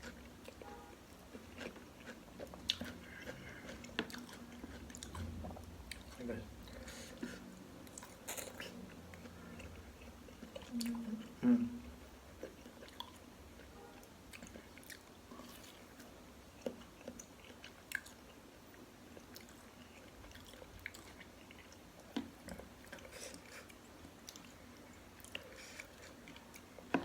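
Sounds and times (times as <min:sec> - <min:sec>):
close-up chewing: 0:00.0 - 0:11.5, 0:12.1 - 0:27.0.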